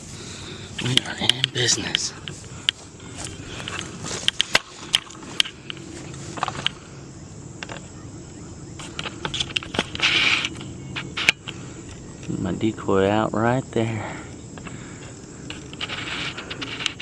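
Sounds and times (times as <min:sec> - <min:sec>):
steady low hum: 0:00.0 - 0:17.0
rustling scrape: 0:01.8 - 0:06.8, 0:08.8 - 0:11.7, 0:15.5 - 0:17.0.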